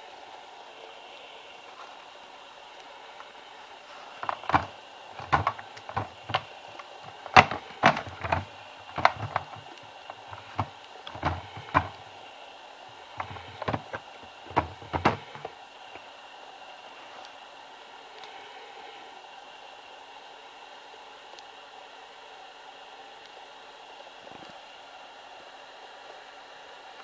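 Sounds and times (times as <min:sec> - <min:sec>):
stick vacuum clacks and knocks: 0:04.2 - 0:12.1, 0:13.2 - 0:15.5.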